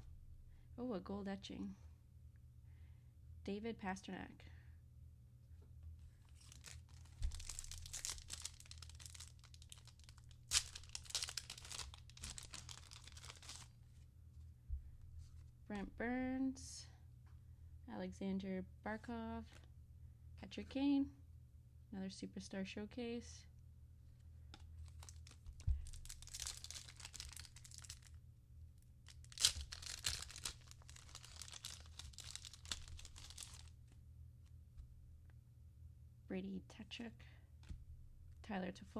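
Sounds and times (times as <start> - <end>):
wrapper crinkling and tearing: 6.3 - 13.7, 24.8 - 28.2, 29.0 - 33.8.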